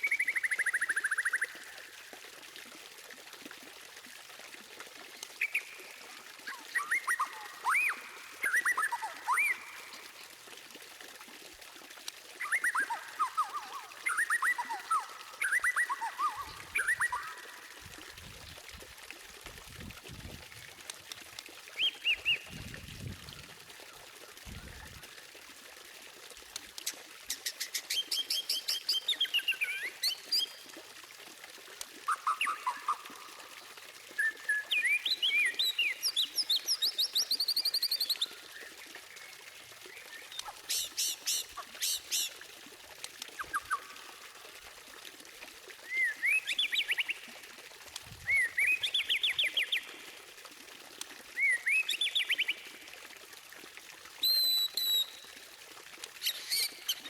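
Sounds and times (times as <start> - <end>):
bird singing high whistles: 54.2 - 55.2.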